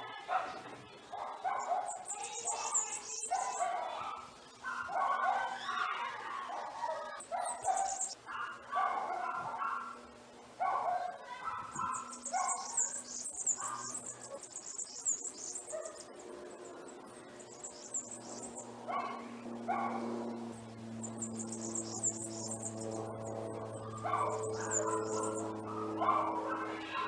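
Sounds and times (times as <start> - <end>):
animal calling: 1.2 - 9.9, 10.8 - 16.1, 23.8 - 27.0
high rapid chirping: 7.5 - 8.2, 11.8 - 16.2.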